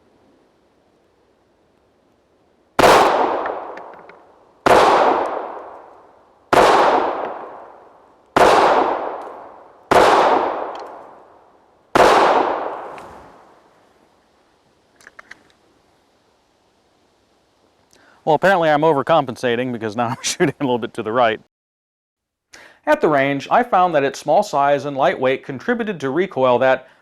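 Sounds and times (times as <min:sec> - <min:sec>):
pistol shots with echo: 0:02.8 - 0:04.0, 0:04.6 - 0:05.8, 0:06.5 - 0:07.8, 0:08.4 - 0:11.2, 0:12.0 - 0:12.9.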